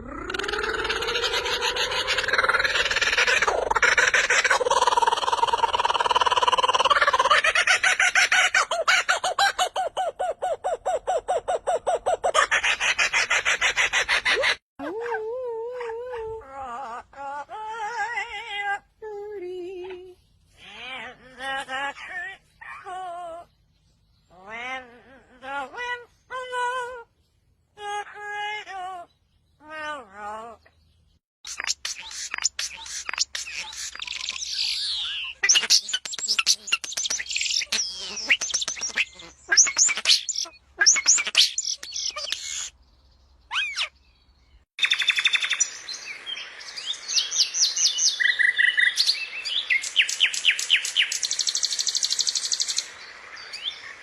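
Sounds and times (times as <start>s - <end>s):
rapid clucking bird calls: 31.5s - 42.7s.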